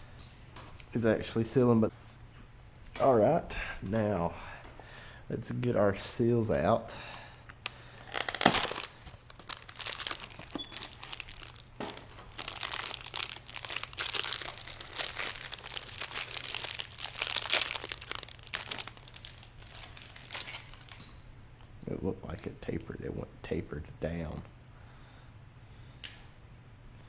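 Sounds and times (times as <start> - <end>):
plastic packaging crinkling: 7.6 - 21.1.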